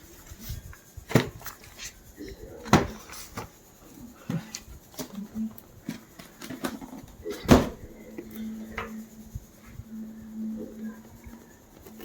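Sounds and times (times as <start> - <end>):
steady low hum: 0.0 - 12.0
knocks and clicks of box handling: 5.8 - 7.8.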